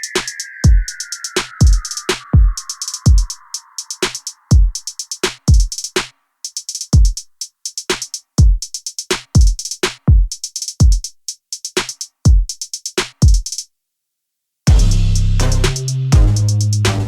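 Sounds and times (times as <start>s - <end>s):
drum machine beat: 0.0s - 13.6s, 14.7s - 17.0s
music with sustained bass: 14.7s - 17.0s.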